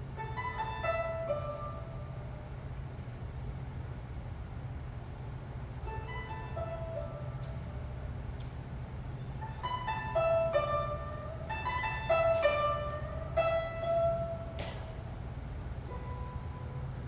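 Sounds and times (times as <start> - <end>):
guzheng ensemble plucked notes: 0.0 - 2.8, 5.7 - 8.3, 9.0 - 17.0
steady low hum: 0.0 - 17.0.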